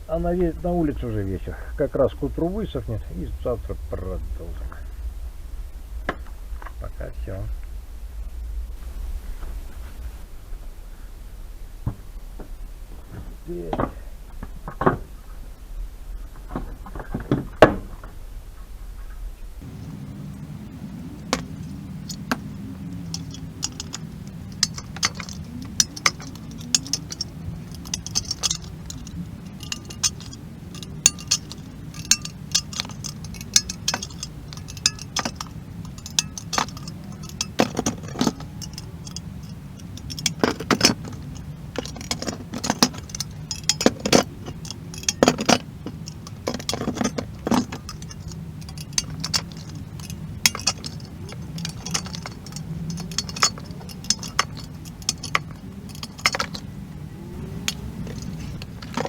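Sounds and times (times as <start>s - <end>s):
steady low hum: 0.0s - 12.9s, 19.6s - 59.0s
metallic clinks and taps: 19.6s - 59.0s.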